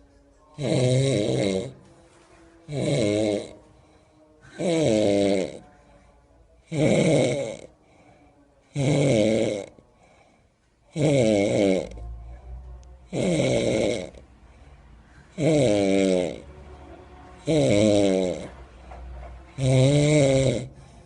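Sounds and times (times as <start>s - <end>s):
person snoring: 0.6s - 1.8s, 2.7s - 3.7s, 4.4s - 5.7s, 6.6s - 7.8s, 8.7s - 9.8s, 10.9s - 12.5s, 13.1s - 14.7s, 15.3s - 16.5s, 17.4s - 18.6s, 19.6s - 21.0s.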